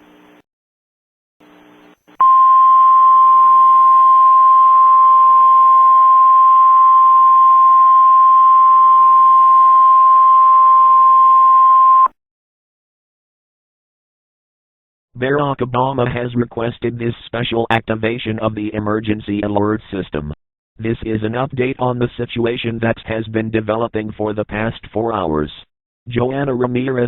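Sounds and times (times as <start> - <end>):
loud steady alarm tone: 2.2 - 12.1.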